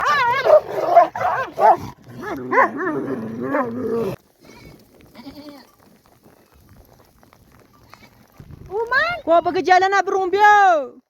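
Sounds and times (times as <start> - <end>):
sheep and goats bleating: 3.6 - 6.0.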